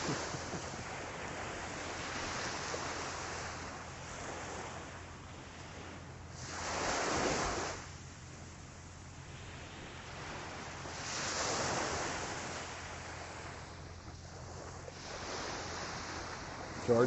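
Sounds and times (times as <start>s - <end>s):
wave breaking: 0.0s - 4.8s
ocean surf washing on beach: 0.0s - 17.0s.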